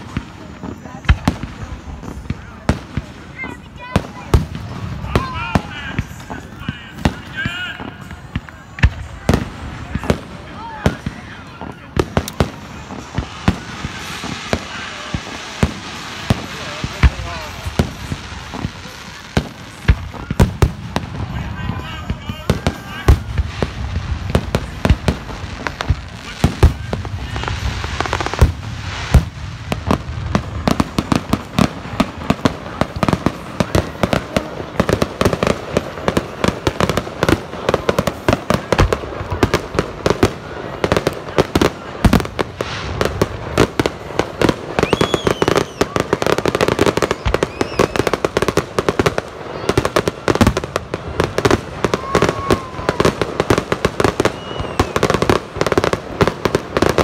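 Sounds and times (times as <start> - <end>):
fireworks bursting and crackling: 0.0 - 57.0.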